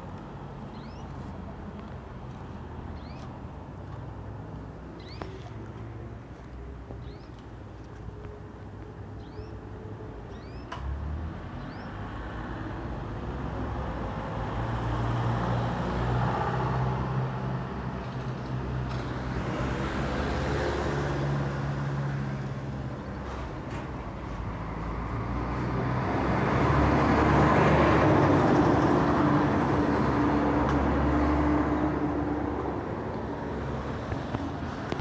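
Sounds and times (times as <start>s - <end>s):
vehicle engine hum: 28.2s - 35.0s.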